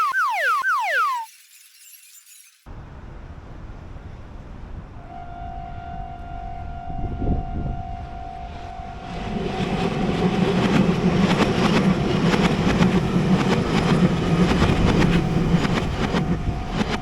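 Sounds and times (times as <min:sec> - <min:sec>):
train rumble: 0:02.8 - 0:17.0.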